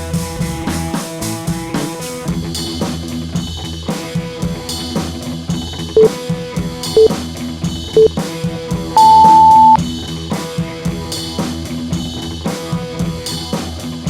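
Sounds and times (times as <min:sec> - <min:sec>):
upbeat music with drums and guitar: 0:00.0 - 0:14.0
short loud beep: 0:09.0 - 0:09.8.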